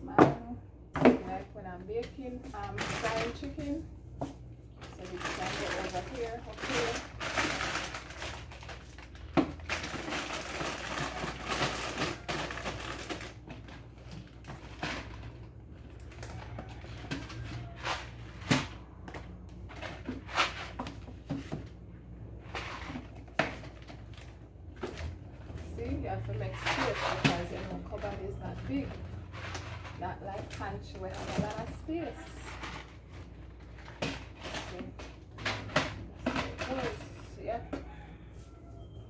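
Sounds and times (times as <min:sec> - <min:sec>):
packaging rustling: 0:02.5 - 0:03.8, 0:04.8 - 0:18.7.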